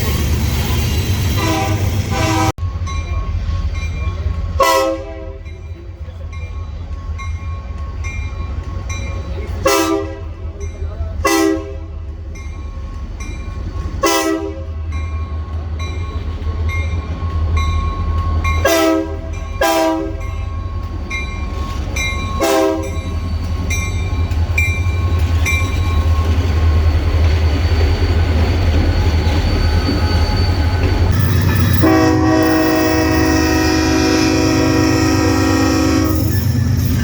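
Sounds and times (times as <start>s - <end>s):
diesel locomotive engine rumble: 0.0s - 37.0s
locomotive horn blasts: 1.4s - 2.6s, 4.6s - 5.6s, 9.6s - 10.4s, 11.2s - 12.0s, 14.0s - 14.8s, 18.6s - 20.3s, 22.4s - 23.0s, 31.7s - 36.4s
thin high squeal: 24.9s - 33.0s.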